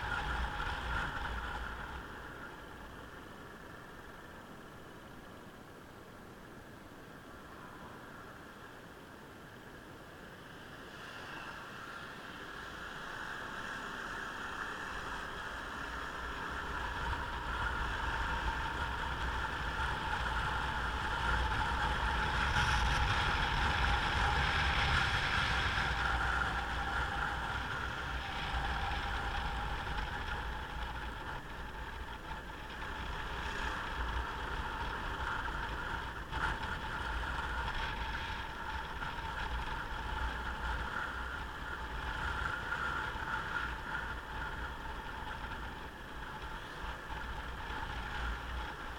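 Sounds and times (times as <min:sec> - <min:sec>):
wind and road noise: 0:00.0 - 0:48.9.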